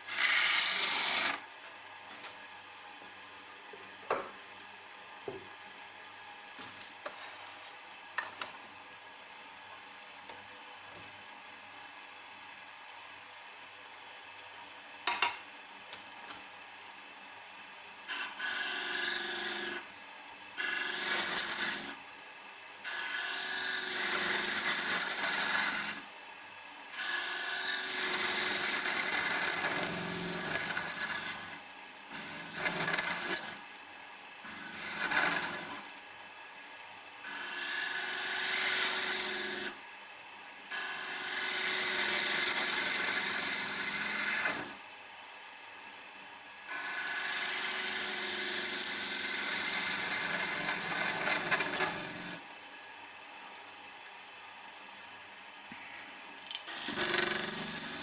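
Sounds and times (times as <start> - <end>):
chisel scraping wood on lathe: 0.0 - 1.4, 34.6 - 35.9, 56.7 - 58.0.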